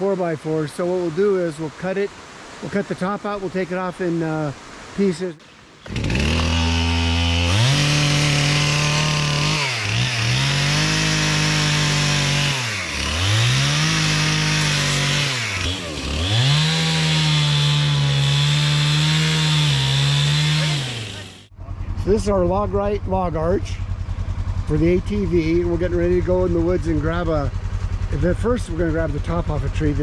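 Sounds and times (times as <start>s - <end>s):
chainsaw cutting wood: 5.8s - 21.5s.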